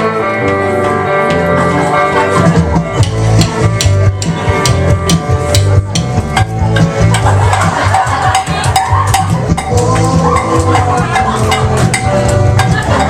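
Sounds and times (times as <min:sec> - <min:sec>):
drums: 0:00.0 - 0:13.0
guitar riff: 0:00.0 - 0:13.0
cowbell struck in a beat: 0:03.0 - 0:13.0.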